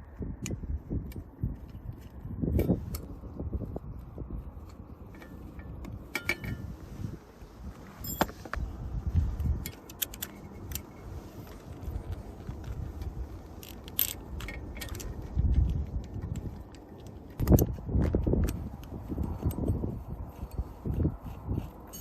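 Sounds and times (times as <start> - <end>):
low rumble: 0.0 - 21.6
metallic clicks and clinks: 8.0 - 8.6, 9.6 - 11.0, 13.0 - 17.8.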